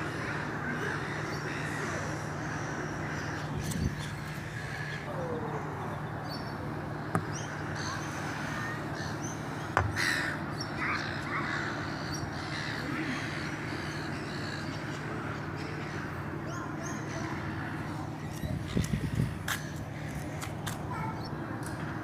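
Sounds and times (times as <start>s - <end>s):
crow-like cawing: 0.0s - 3.7s, 4.4s - 5.4s, 9.8s - 14.8s.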